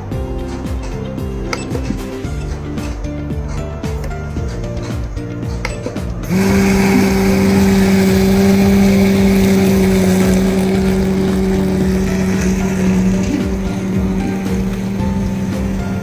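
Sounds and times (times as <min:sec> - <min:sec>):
machine motor humming: 0:05.5 - 0:16.0.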